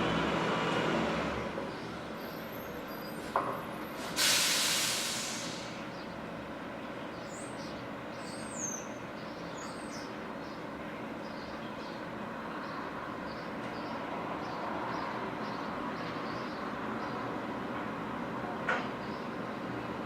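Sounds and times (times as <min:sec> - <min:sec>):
loud hiss of released air: 0:04.0 - 0:05.9.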